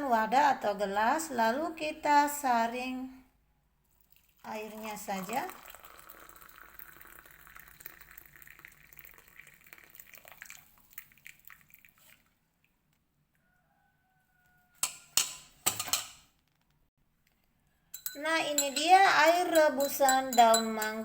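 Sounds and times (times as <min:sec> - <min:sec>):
liquid pouring into a glass: 0:04.1 - 0:12.4.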